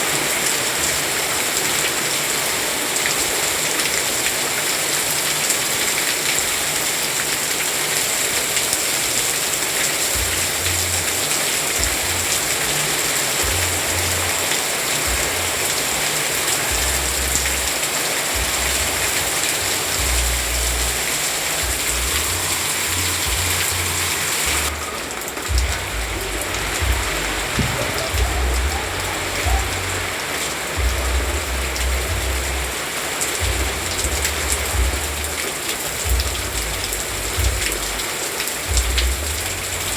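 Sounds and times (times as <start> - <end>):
steady rain hissing: 0.0 - 39.9
low rumbles: 18.4 - 32.8, 33.4 - 35.4.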